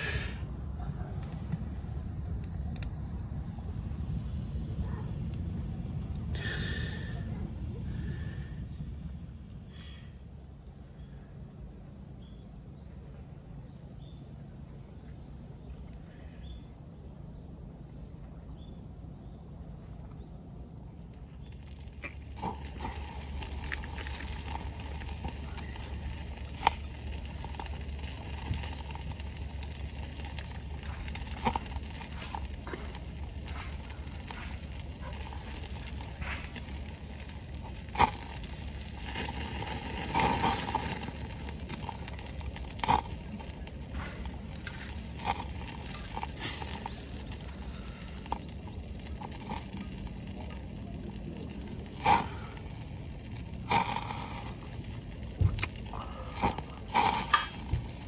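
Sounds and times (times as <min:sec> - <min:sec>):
fat popping and crackling: 0:00.0 - 0:10.1, 0:20.9 - 0:58.0
meat sizzling in a pan: 0:21.4 - 0:55.8.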